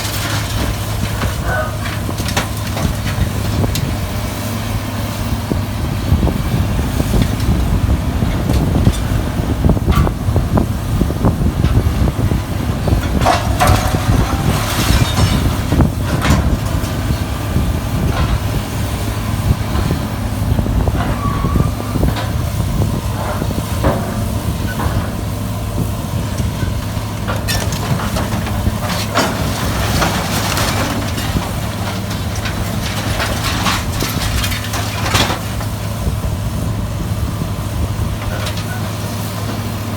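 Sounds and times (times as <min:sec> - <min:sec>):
scrap metal crunching and hissing: 0:00.0 - 0:05.6, 0:06.2 - 0:39.9
metal clanks: 0:12.9 - 0:16.9.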